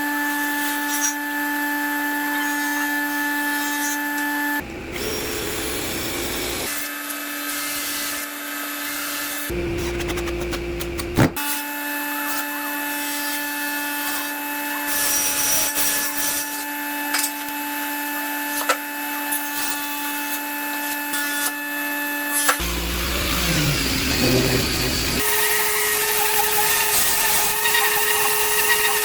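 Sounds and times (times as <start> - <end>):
power tool motor working wood: 4.6 - 6.9, 22.3 - 29.0.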